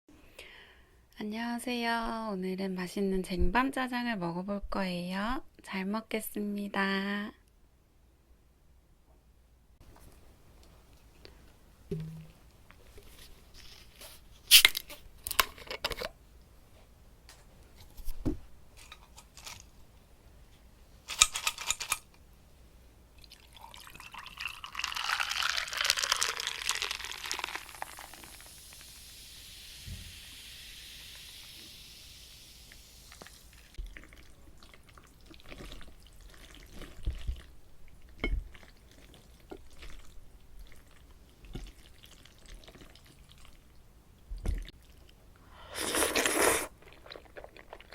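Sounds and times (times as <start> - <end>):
wet liquid sound: 23.2 - 43.7
soft hiss: 27.1 - 33.8.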